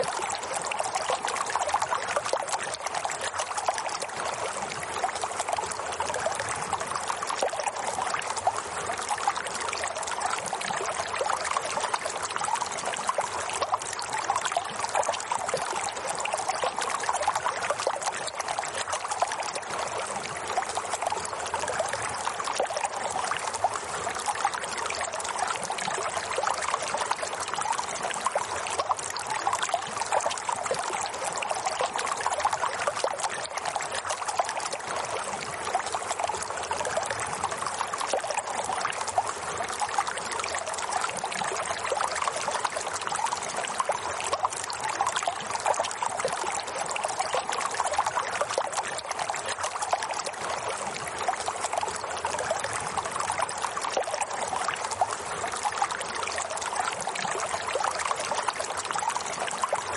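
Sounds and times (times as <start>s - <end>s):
water trickling and splashing: 0.0s - 59.9s.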